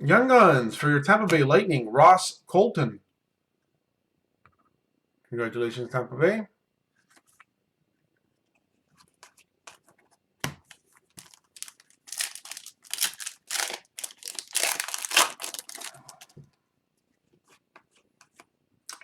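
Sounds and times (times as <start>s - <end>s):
foil wrapper crinkling: 11.1s - 16.3s.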